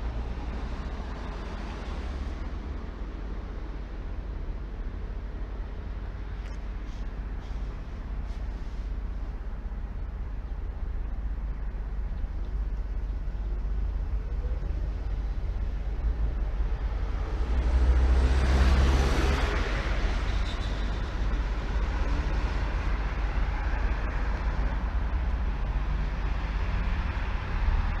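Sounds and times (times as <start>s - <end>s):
road traffic rumble: 0.0s - 28.0s
vehicle passing: 17.2s - 20.4s.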